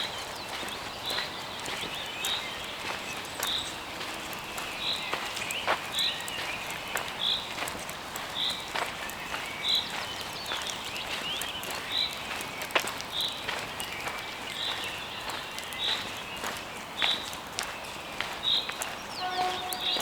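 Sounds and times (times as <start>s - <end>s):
footsteps crunching on dry leaves: 0.0s - 20.0s
songbird high call: 18.6s - 20.0s.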